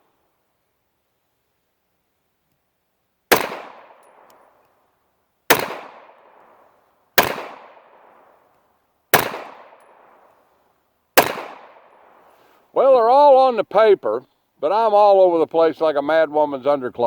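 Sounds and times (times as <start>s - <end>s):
pistol shots with echo: 3.3s - 4.4s, 5.5s - 6.6s, 7.2s - 8.4s, 9.1s - 10.3s, 11.2s - 12.2s.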